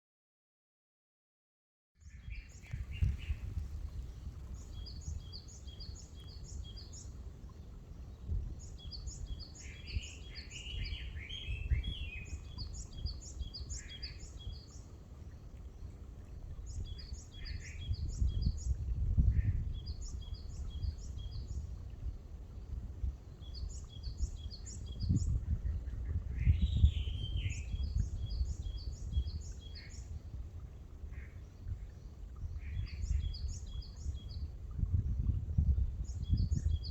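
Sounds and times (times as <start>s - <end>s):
bird chirping calls: 2.0s - 7.2s, 8.5s - 14.8s.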